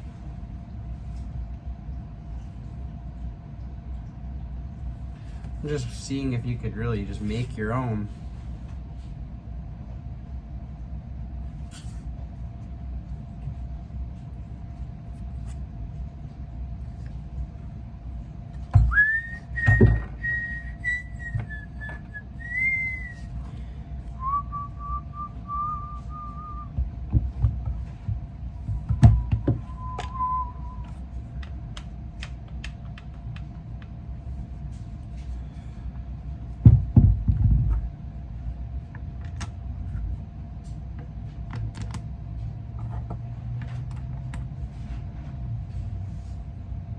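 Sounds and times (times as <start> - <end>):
steady low hum: 0.0 - 46.9
person whistling tunes: 18.8 - 23.3, 24.2 - 26.7, 29.2 - 31.0.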